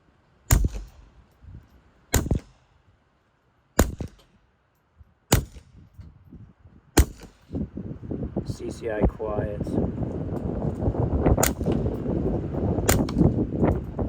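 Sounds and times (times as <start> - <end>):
suppressed pistol shots: 0.5 - 1.2, 2.1 - 2.7, 3.8 - 4.4, 5.3 - 5.8, 7.0 - 7.5, 11.4 - 11.8, 12.9 - 13.2.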